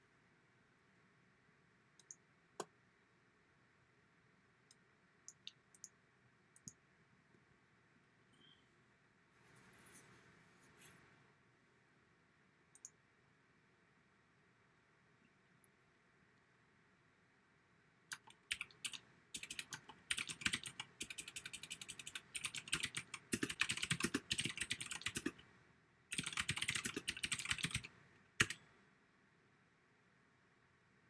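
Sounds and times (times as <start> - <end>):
typewriter keystroke clicks: 26.1 - 28.6.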